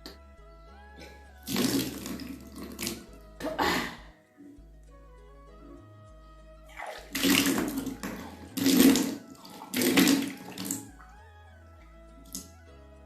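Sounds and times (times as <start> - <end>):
water gushing from mouth: 1.4 - 4.1, 6.7 - 11.0.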